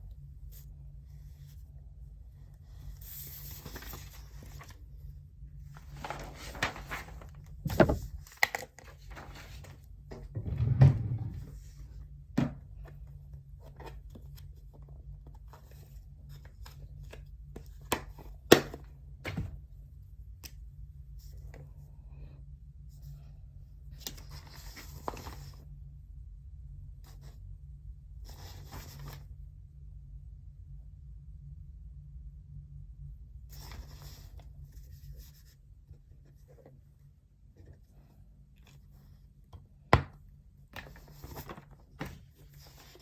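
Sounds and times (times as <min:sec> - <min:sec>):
steady low hum: 0:00.0 - 0:43.0
paper rustling: 0:03.0 - 0:04.8, 0:05.7 - 0:09.8, 0:40.8 - 0:43.0
heavy thunks: 0:10.1 - 0:11.6.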